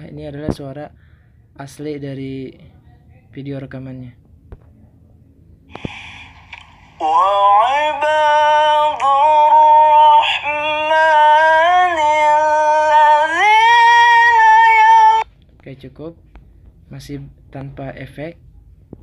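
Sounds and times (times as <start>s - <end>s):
person chanting recitation: 5.8s - 15.2s.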